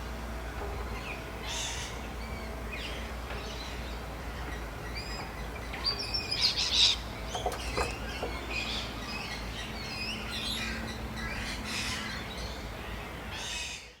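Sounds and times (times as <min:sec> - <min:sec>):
distant construction rumble and hum: 0:00.0 - 0:14.0.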